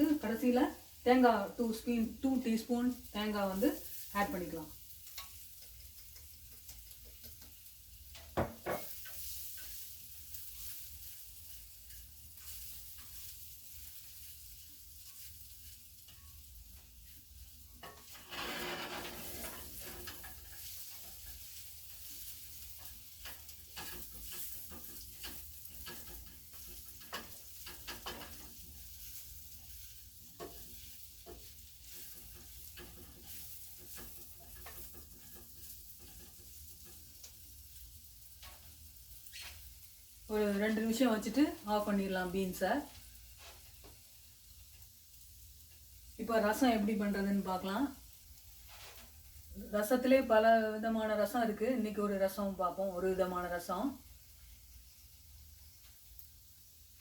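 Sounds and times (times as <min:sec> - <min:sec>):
food sizzling in a pan: 0:00.0 - 0:57.0
spoon scraping a pan: 0:02.9 - 0:39.9, 0:47.9 - 0:49.6.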